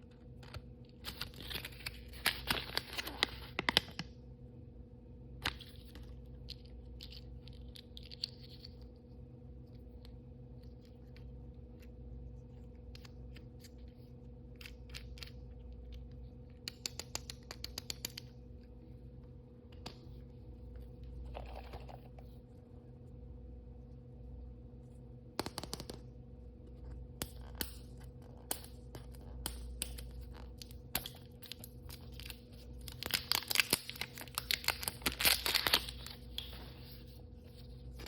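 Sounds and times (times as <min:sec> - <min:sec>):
low electrical hum: 0:00.0 - 0:38.0
plastic packaging clicks and taps: 0:25.4 - 0:26.0.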